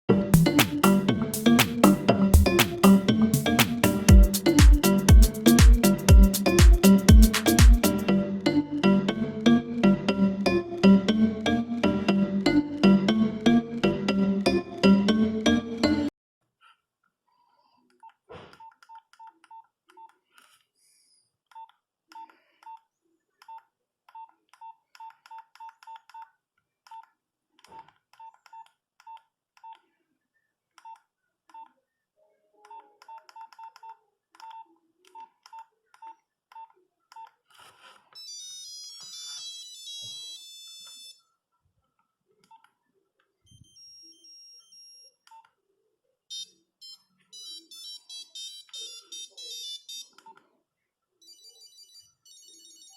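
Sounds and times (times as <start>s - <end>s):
monophonic ringtone melodies: 0.1s - 16.1s, 38.2s - 41.1s, 46.3s - 50.2s, 51.2s - 52.9s.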